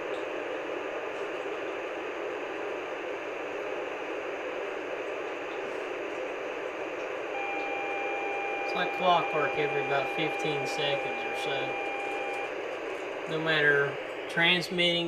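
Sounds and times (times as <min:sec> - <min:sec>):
radio static hiss: 0:00.3 - 0:15.0
steady tones: 0:07.3 - 0:15.0.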